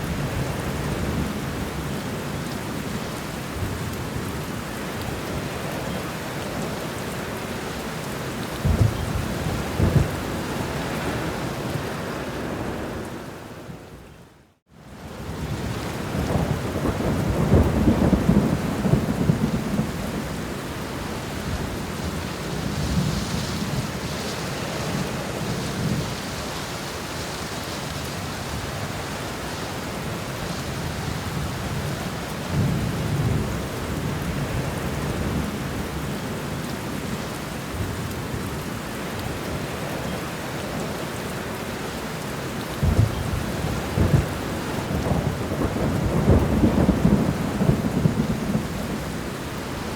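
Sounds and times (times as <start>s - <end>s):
heavy rain: 0.0s - 49.9s
thunder rumbling: 8.5s - 13.8s, 15.4s - 20.9s, 42.7s - 49.9s.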